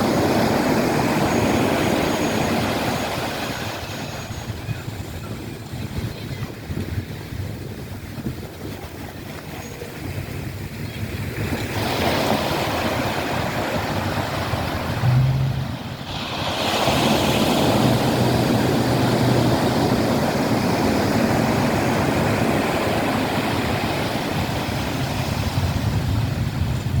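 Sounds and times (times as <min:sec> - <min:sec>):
sea waves washing onto shore: 0:06.6 - 0:27.0.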